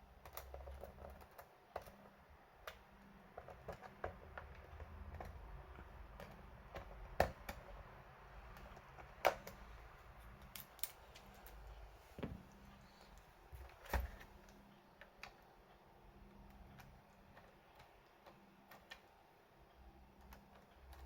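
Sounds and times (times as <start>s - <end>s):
light clicks and taps: 0.2s - 7.8s.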